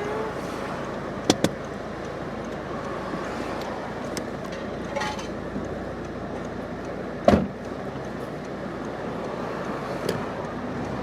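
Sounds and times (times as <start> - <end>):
street traffic: 0.0 - 11.0
car door slamming: 7.2 - 7.6.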